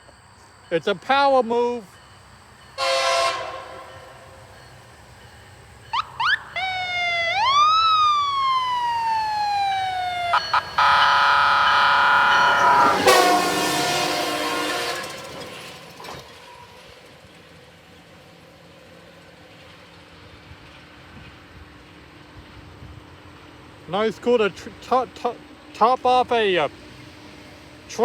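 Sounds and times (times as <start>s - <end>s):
train horn blasts: 2.8s - 4.4s, 10.3s - 15.7s
train siren wail: 2.8s - 15.7s.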